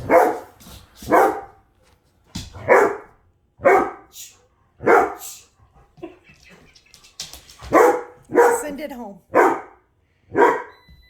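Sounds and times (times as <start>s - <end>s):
dog barking: 0.0s - 1.6s, 2.6s - 4.1s, 4.8s - 5.3s, 7.7s - 8.7s, 9.3s - 10.8s.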